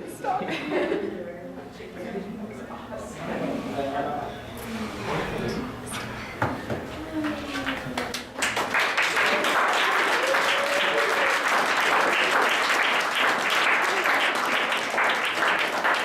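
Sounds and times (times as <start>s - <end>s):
faint voices: 0.0s - 8.4s
group of people applauding: 7.2s - 16.0s.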